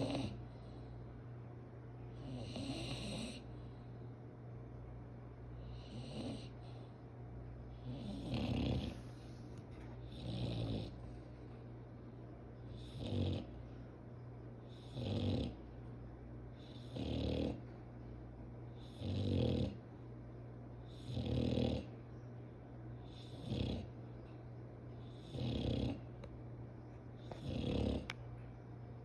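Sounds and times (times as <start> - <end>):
dog snoring: 0.0 - 1.0, 2.1 - 3.8, 5.6 - 7.0, 7.7 - 11.2, 12.6 - 13.8, 14.6 - 15.8, 16.5 - 17.8, 18.7 - 19.9, 20.8 - 22.0, 23.0 - 24.0, 25.0 - 26.3, 27.2 - 28.2.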